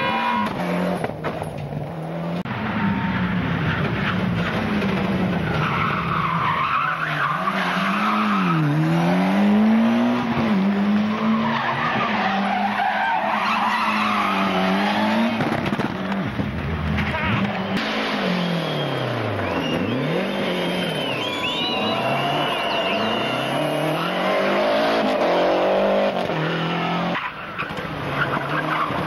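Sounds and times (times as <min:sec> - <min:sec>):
rally car engine working hard: 0:00.0 - 0:06.8, 0:14.5 - 0:29.0.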